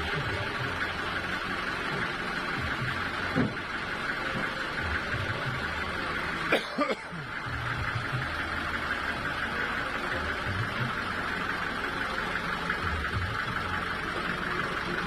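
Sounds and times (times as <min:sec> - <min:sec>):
sawmill machinery running: 0:00.0 - 0:15.0
person coughing: 0:06.5 - 0:07.2.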